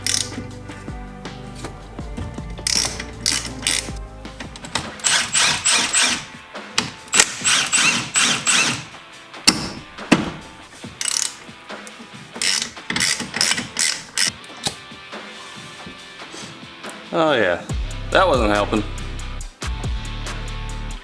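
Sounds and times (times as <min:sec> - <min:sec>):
ratchet wrench clicking: 0:00.0 - 0:00.5, 0:02.6 - 0:06.3, 0:07.1 - 0:08.9, 0:11.0 - 0:14.5.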